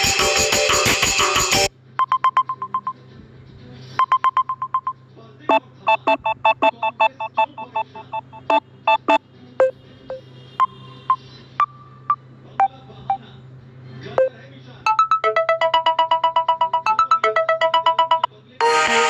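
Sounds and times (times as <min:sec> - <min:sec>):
phone ringtone music: 0:00.0 - 0:03.0, 0:05.9 - 0:09.2, 0:14.9 - 0:19.0
keypad touch tone beeps: 0:02.0 - 0:03.0, 0:04.0 - 0:05.0, 0:05.9 - 0:09.7.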